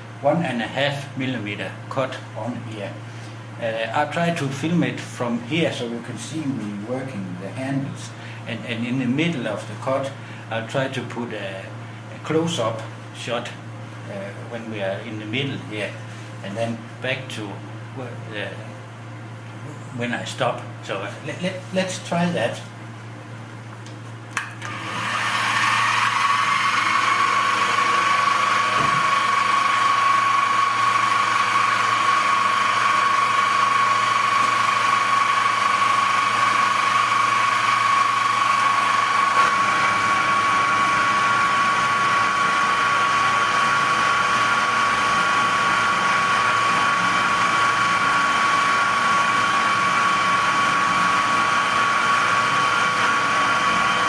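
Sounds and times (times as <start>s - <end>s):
milling machine whining: 24.4s - 54.0s.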